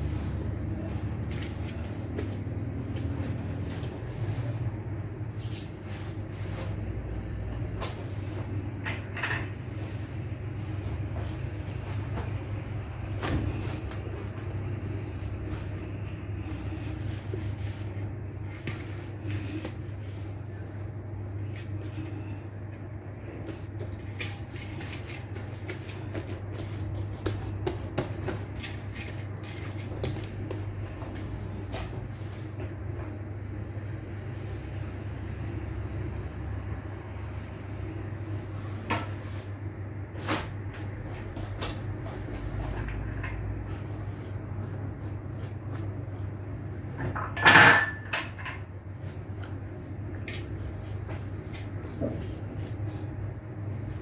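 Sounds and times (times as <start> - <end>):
steady low hum: 0.0 - 54.0
food and utensils rustling: 23.2 - 33.2, 37.8 - 54.0.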